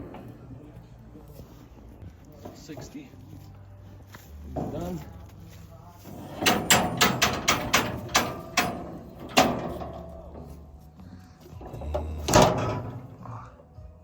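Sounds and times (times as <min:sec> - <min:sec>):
metal gear clanking: 0:06.1 - 0:10.9, 0:11.5 - 0:13.5.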